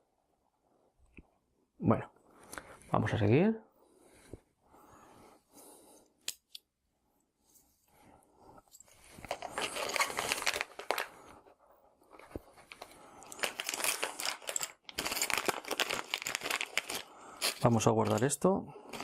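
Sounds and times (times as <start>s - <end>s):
plastic packaging crinkling: 9.1s - 11.4s, 12.0s - 19.0s.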